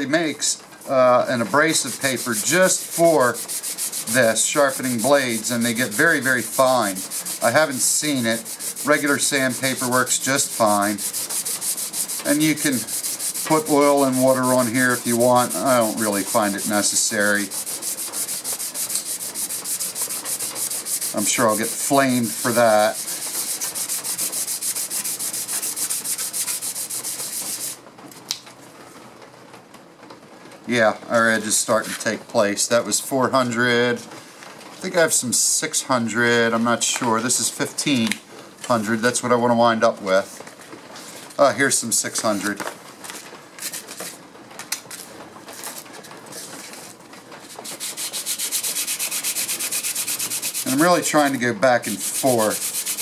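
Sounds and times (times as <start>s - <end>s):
plane blade scraping on sandpaper: 0.8s - 27.8s, 47.5s - 53.0s.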